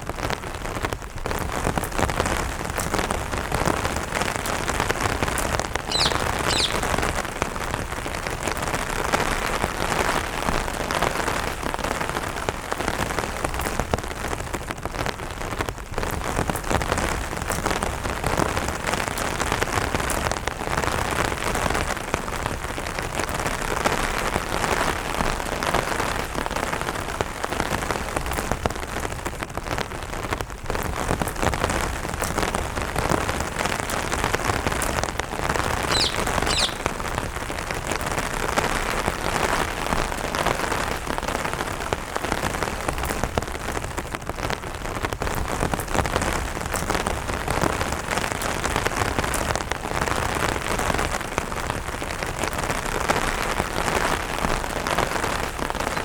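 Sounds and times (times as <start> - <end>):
rain pattering on an umbrella: 0.0 - 56.0
high bird chirp: 5.9 - 7.1, 35.8 - 37.0.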